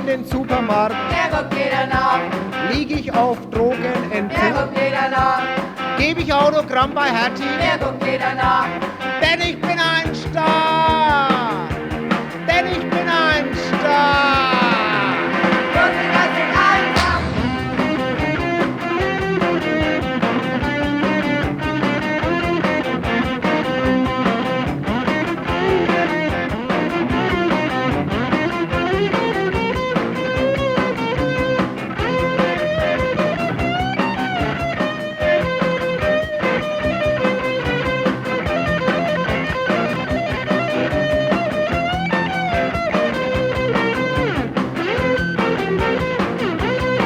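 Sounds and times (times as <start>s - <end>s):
electric guitar lead: 0.0s - 47.0s
rock band beat: 0.0s - 47.0s.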